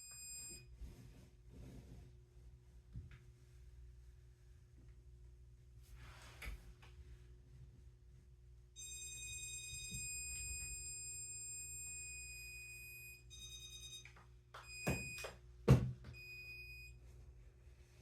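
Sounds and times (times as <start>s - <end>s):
stud finder high tone: 8.8s - 15.4s.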